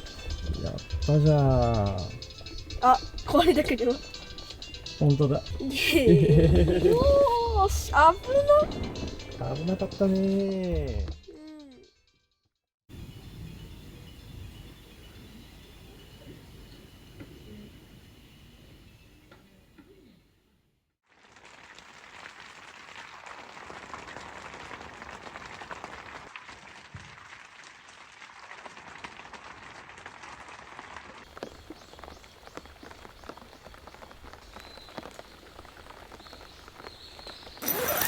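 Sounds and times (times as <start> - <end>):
steady rain falling: 0.0 - 10.6, 21.2 - 37.6.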